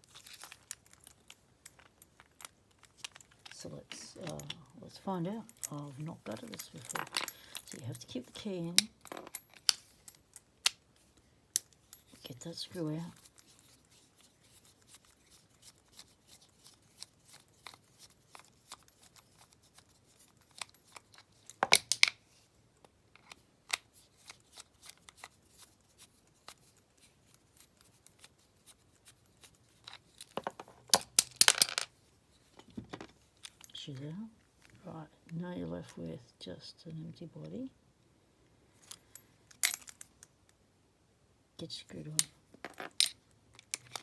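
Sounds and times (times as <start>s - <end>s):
clicking and rattling: 0.2s - 4.7s, 5.3s - 10.4s.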